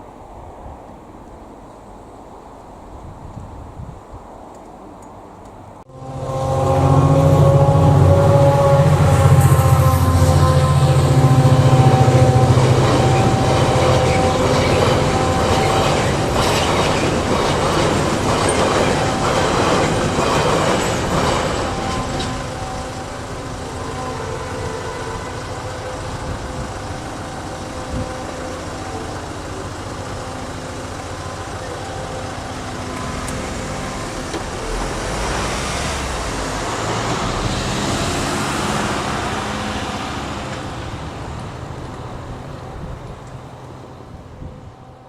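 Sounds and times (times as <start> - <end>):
steady road hum: 0.0 - 45.0
vehicle passing by: 5.9 - 20.7, 32.1 - 43.6.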